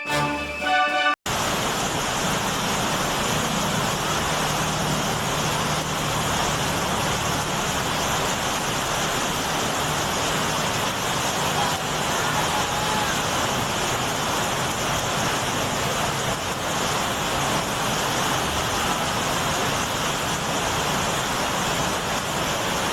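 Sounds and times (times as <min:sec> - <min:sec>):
orchestral music: 0:00.0 - 0:01.2
tyres hissing on wet road: 0:01.3 - 0:22.9.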